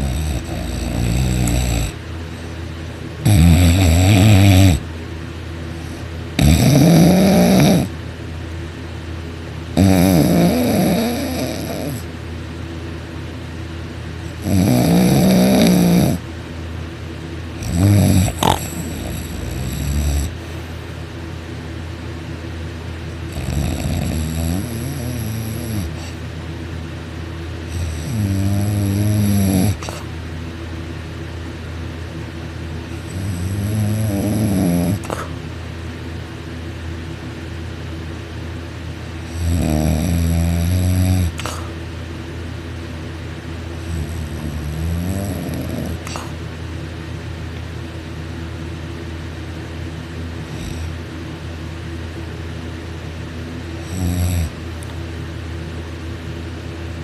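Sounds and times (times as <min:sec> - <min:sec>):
loud open-mouthed snoring: 0:00.0 - 0:02.0, 0:03.2 - 0:04.9, 0:05.8 - 0:07.9, 0:09.8 - 0:12.1, 0:14.3 - 0:16.2, 0:17.6 - 0:20.4, 0:23.3 - 0:26.2, 0:27.7 - 0:30.1, 0:32.9 - 0:35.4, 0:39.2 - 0:41.7, 0:43.8 - 0:46.4, 0:50.4 - 0:51.0, 0:53.8 - 0:54.6
steady low hum: 0:00.0 - 0:57.0.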